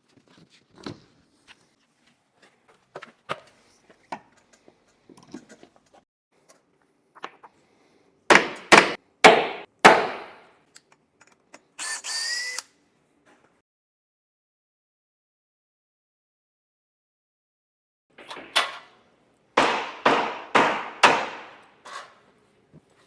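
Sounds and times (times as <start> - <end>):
cordless drill driving screw into wood: 11.8 - 12.7.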